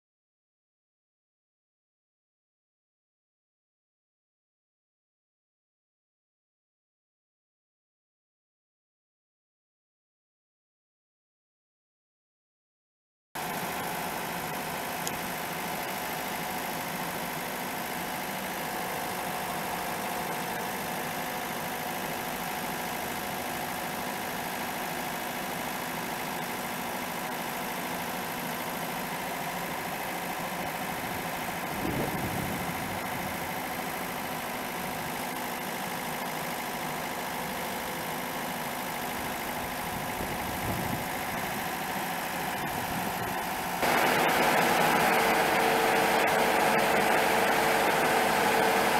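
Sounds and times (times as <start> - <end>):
excavator engine running: 13.4 - 48.9.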